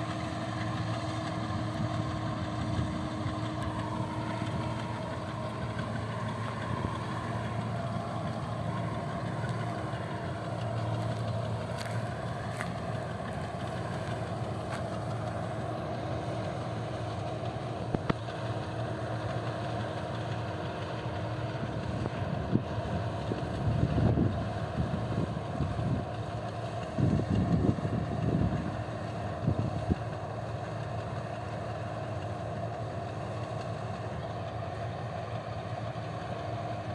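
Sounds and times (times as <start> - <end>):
low rumbles: 0.0 - 18.4
motor humming steadily: 0.0 - 36.9.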